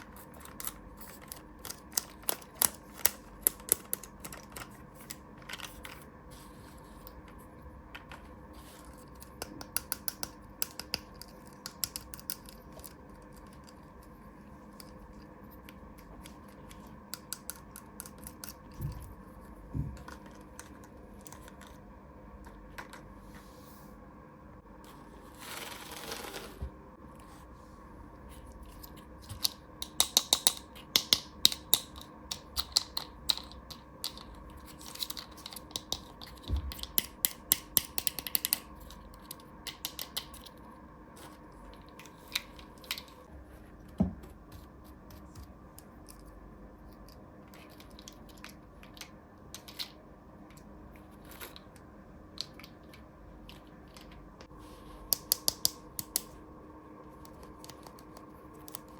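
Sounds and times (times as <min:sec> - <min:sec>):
plastic toy pieces clicking: 0:09.3 - 0:13.7, 0:29.4 - 0:38.6.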